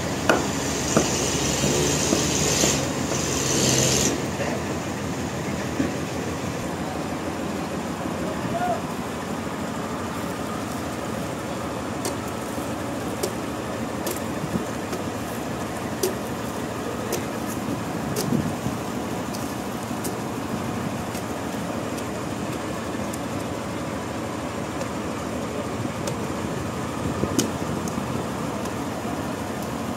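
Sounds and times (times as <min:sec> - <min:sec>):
sawmill machinery running: 0:00.0 - 0:29.9
sharp clicks and knocks: 0:16.0 - 0:16.4.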